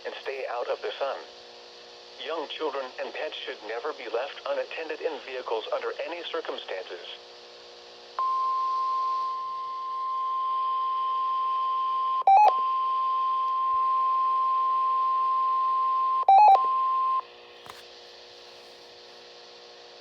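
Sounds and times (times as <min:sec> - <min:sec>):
faint radio hiss: 0:00.0 - 0:08.0, 0:17.6 - 0:20.0.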